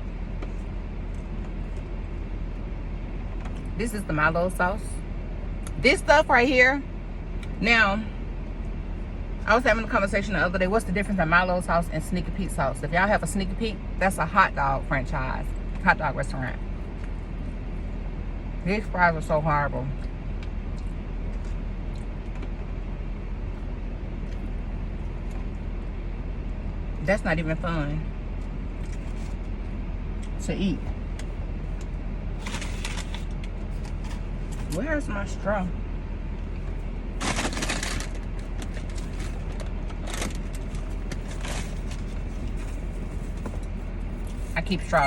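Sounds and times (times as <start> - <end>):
car engine idling: 0.0 - 45.0
food packaging crinkling: 32.4 - 34.2, 37.2 - 43.0.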